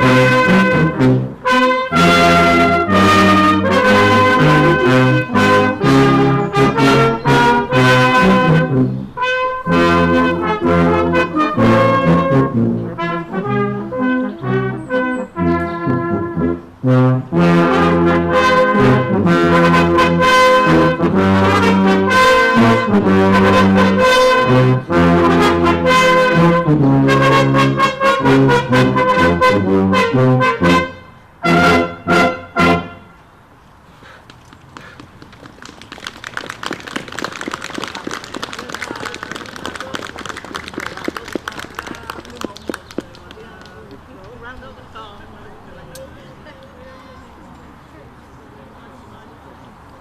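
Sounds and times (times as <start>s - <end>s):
brass band playing slow chords: 0.0s - 33.3s.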